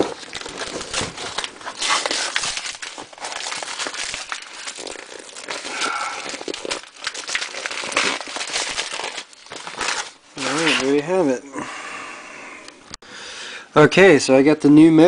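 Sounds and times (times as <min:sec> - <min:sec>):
packaging crinkling and rustling: 0:00.0 - 0:11.3.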